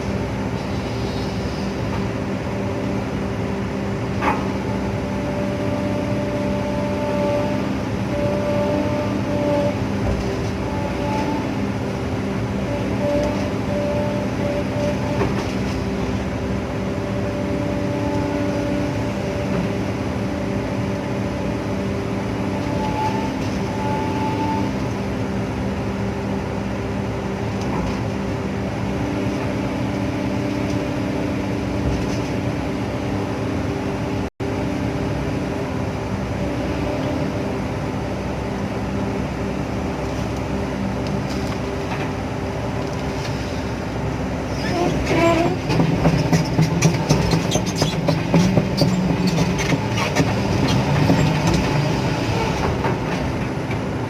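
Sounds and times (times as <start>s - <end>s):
excavator diesel engine droning: 0.0s - 54.0s.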